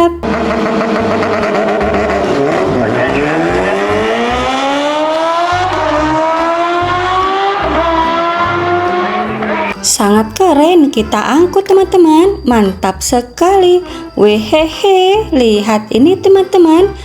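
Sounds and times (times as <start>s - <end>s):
racing engine revving: 0.0s - 9.8s.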